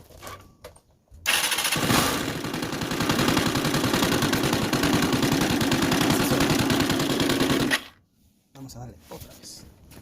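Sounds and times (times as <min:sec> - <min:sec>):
motorcycle engine starting and running: 0:01.3 - 0:08.0.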